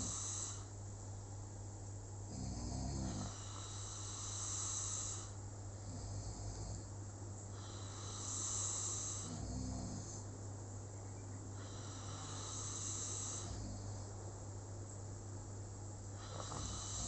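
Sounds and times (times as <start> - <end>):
person snoring: 0.0 - 0.7, 2.3 - 6.9, 7.5 - 10.3, 11.6 - 14.0, 16.2 - 17.0.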